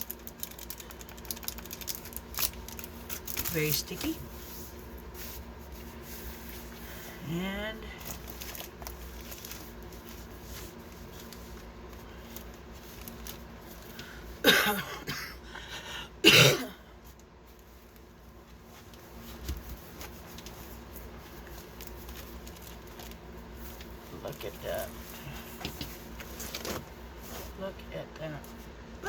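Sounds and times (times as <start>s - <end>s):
person coughing: 14.4s - 15.5s, 16.2s - 16.8s.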